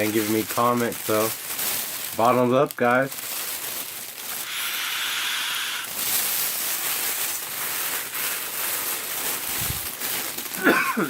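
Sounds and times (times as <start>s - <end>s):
airy hiss of inhale: 4.4s - 6.4s.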